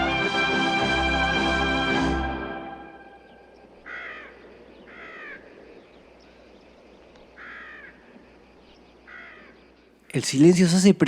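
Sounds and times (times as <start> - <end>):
faint background noise: 2.5 - 11.0
crow cawing: 3.7 - 6.4, 7.3 - 8.3, 9.0 - 9.7.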